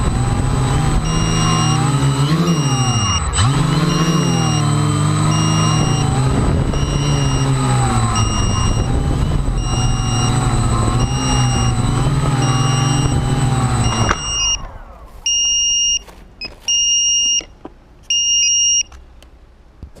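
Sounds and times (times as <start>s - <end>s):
electric motors running: 0.0s - 15.2s
short electronic beeps: 0.9s - 19.0s.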